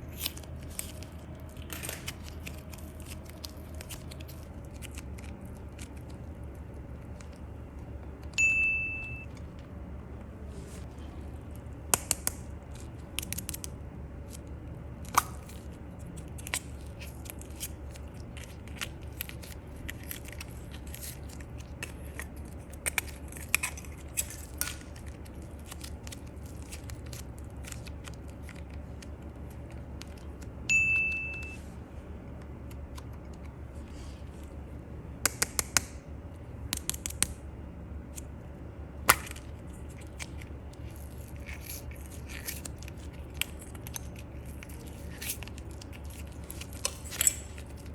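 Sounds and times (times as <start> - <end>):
steady low hum: 0.0 - 47.9
bright ding chime: 8.4 - 9.2, 30.7 - 31.6
clicks and crackles of slime handling: 11.8 - 14.4, 36.6 - 37.4, 39.1 - 47.9.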